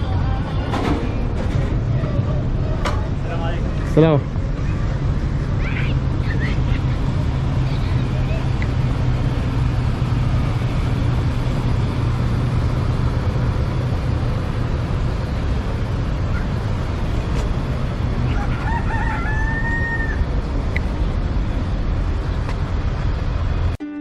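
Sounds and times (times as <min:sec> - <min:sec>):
low rumbling background noise: 0:00.0 - 0:23.8
rooster crowing: 0:18.3 - 0:20.3.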